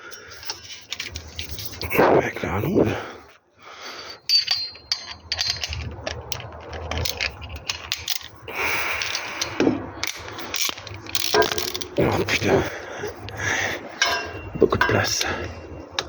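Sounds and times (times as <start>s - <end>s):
metal tools clinking: 0.0s - 3.0s, 4.0s - 16.0s
short metallic ring: 14.0s - 14.9s.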